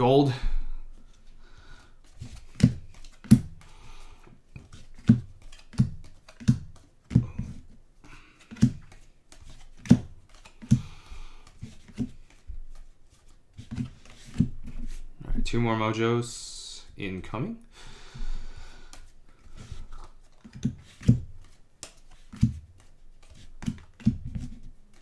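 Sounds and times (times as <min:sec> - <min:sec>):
card rustling: 0:02.0 - 0:03.8, 0:04.5 - 0:15.0.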